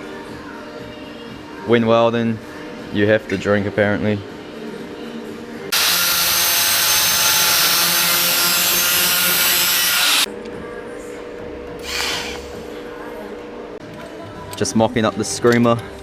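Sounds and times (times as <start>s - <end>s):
power tool grinding metal: 5.7s - 10.3s.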